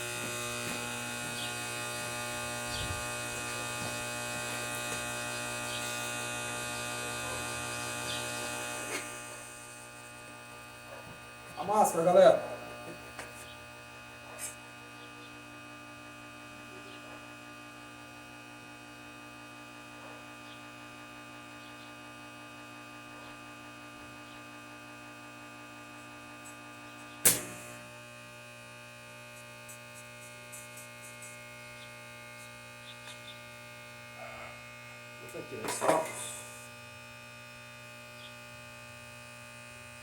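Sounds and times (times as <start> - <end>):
welding machine transformer hum: 0.0 - 40.0
loud sharp crack: 27.2 - 27.8.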